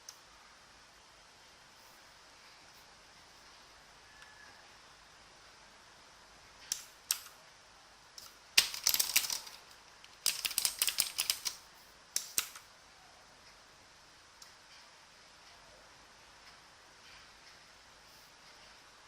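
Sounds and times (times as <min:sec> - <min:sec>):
clicky mechanical keyboard keystrokes: 0:08.2 - 0:11.6, 0:12.2 - 0:12.6.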